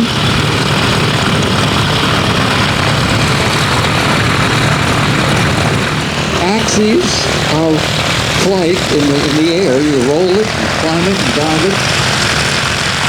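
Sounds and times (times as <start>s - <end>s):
propeller engine droning: 0.0s - 13.0s.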